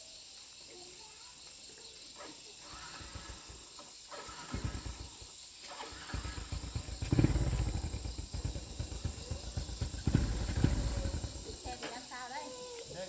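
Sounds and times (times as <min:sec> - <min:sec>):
small engine running unevenly: 0:02.6 - 0:11.8.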